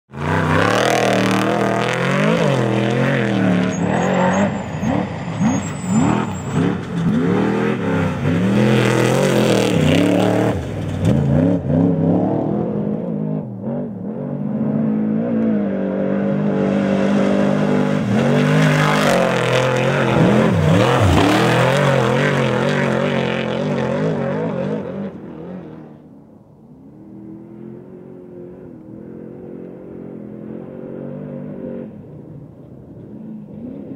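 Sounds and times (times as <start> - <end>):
truck engine revving: 0.1 - 25.9.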